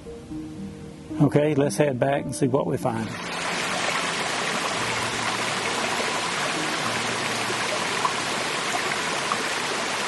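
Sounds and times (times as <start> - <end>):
water rushing hiss: 3.0 - 10.0.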